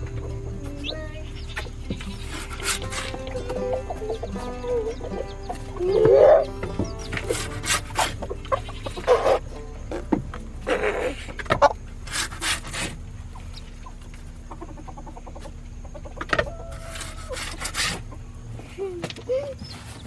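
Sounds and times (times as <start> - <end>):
chickens clucking: 0.0 - 19.4.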